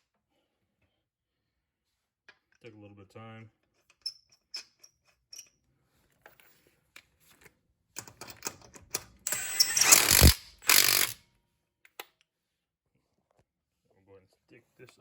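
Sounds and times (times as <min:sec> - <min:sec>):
impact wrench running: 0:09.3 - 0:11.2.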